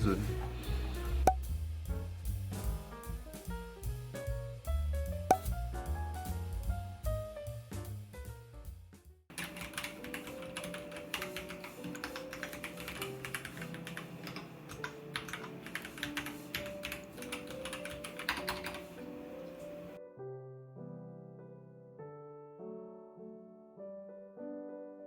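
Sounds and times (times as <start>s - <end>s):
background music: 0.0s - 20.2s
mechanical keyboard typing: 9.3s - 19.0s.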